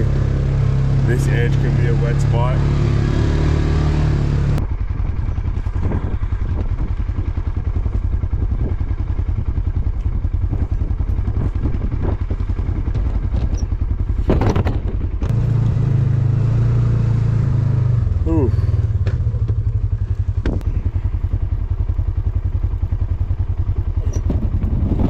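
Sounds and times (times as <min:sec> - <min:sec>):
vehicle engine running: 0:00.0 - 0:25.0
rattling and knocks from bumpy ride: 0:10.0 - 0:15.4, 0:23.6 - 0:25.0
vehicle jolt: 0:10.4 - 0:16.9, 0:23.7 - 0:25.0.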